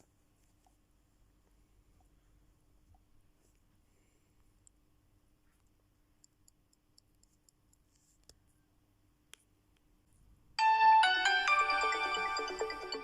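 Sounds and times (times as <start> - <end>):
melodic phone ringtone: 10.6 - 13.0.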